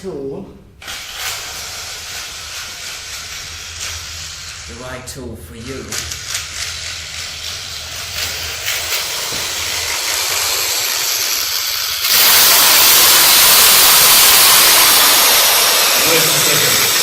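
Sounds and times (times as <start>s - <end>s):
loud rushing hiss of air: 0.8s - 4.7s, 8.2s - 17.0s.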